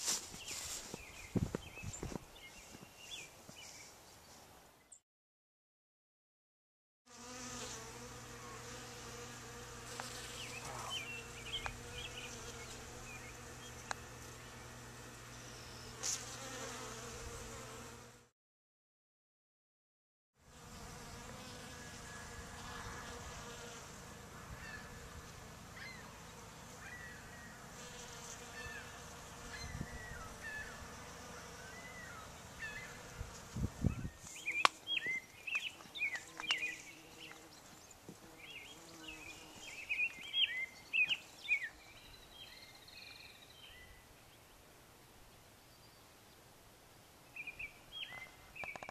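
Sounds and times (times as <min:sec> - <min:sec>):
songbird chirping: 0:00.4 - 0:05.0, 0:10.0 - 0:16.0, 0:34.3 - 0:48.9
bees buzzing: 0:07.1 - 0:18.3, 0:20.5 - 0:41.1.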